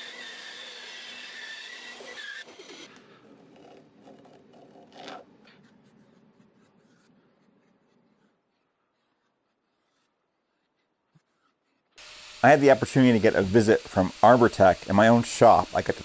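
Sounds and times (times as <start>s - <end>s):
faint scraping and rubbing: 2.9s - 12.0s.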